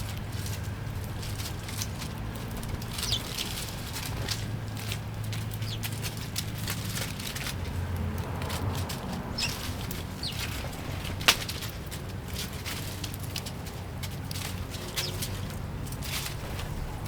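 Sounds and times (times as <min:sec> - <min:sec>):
sparrow chirps: 0:00.1 - 0:07.1, 0:08.4 - 0:11.7, 0:14.8 - 0:15.5.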